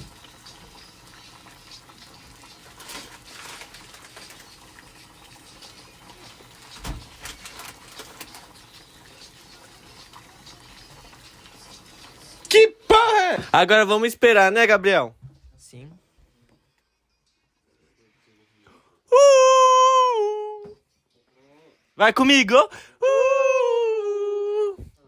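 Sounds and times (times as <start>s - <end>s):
kitchen rustling and scraping: 0.0s - 12.4s.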